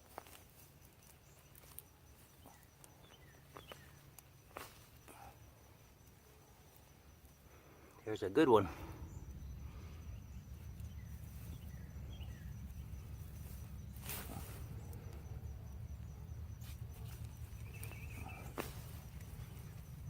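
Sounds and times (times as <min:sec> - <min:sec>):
soil scraping and rustling: 0:00.0 - 0:05.4, 0:10.5 - 0:15.3, 0:16.3 - 0:20.0
low steady rumble: 0:08.6 - 0:20.0.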